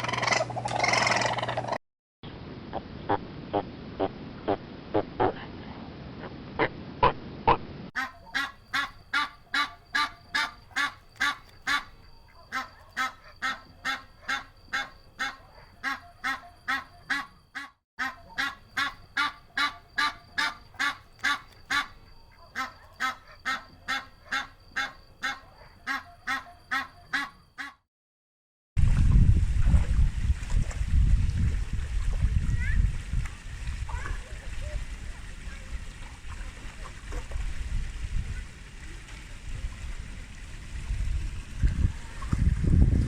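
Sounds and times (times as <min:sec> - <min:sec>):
waterfowl honking: 0:00.0 - 0:01.8, 0:08.0 - 0:27.8.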